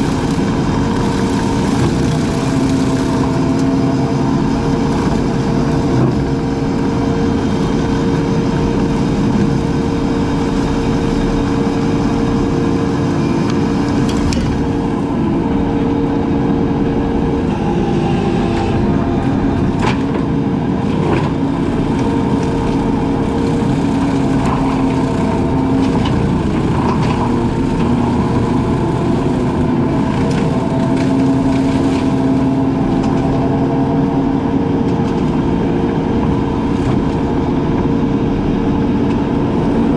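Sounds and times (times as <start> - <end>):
wood splitting cracks: 0.0 - 3.8
brush cutter engine running: 0.0 - 39.9.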